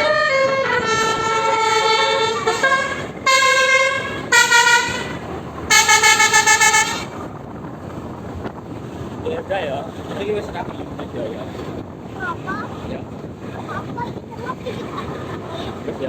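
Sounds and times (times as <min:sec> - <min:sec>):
musical bus horn playing a tune: 0:00.0 - 0:07.3.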